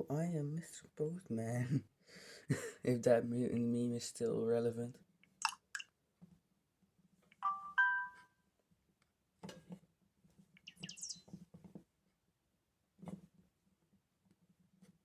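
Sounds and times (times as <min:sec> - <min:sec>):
electronic two-note chime: 0:07.4 - 0:08.2
high chirping tone: 0:07.4 - 0:08.3, 0:10.6 - 0:11.3.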